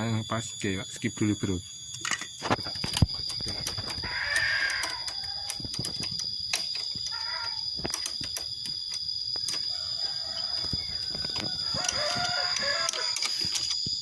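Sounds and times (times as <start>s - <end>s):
sharp clicks and knocks: 1.9s - 9.7s, 10.6s - 14.0s
rooster-like call: 3.9s - 5.6s, 9.6s - 13.4s.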